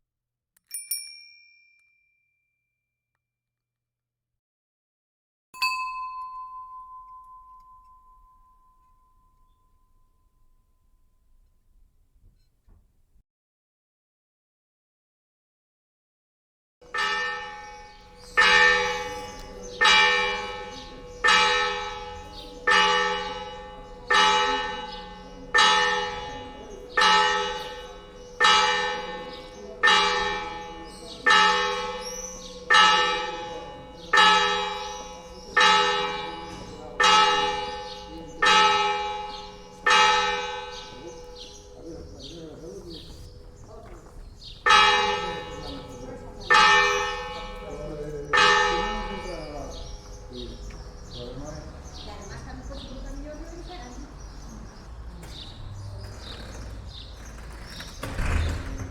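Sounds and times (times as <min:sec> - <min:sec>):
bell tolling: 0:16.9 - 0:53.5.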